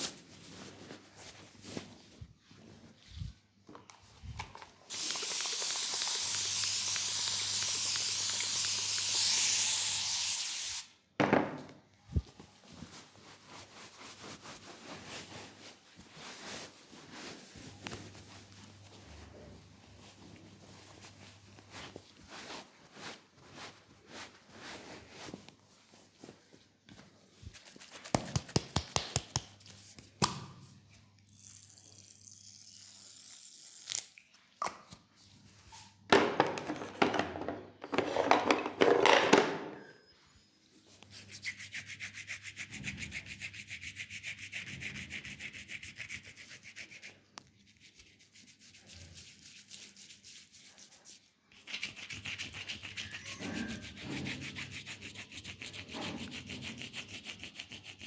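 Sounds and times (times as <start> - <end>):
hands rubbing skin: 4.9 - 9.3, 27.5 - 30.0.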